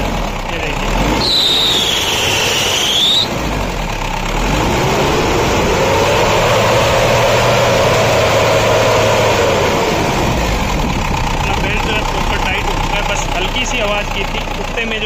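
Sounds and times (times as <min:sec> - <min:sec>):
car engine revving: 0:00.0 - 0:15.0
high belt whine: 0:01.2 - 0:03.4.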